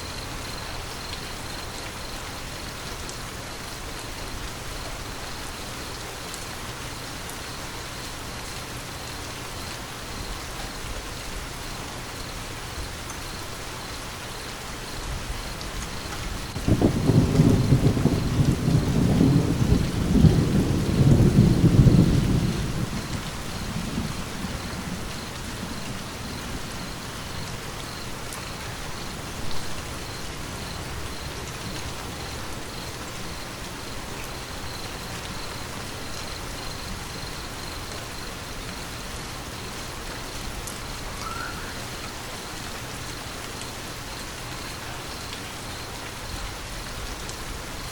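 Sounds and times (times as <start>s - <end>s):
steady rain falling: 0.0s - 47.9s
thunder rumbling: 15.9s - 32.7s.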